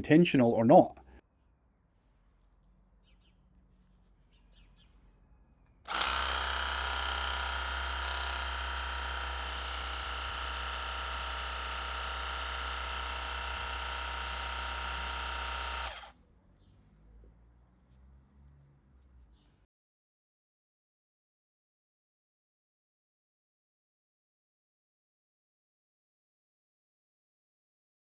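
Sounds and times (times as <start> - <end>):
pressure washer motor and pump: 5.9 - 16.1.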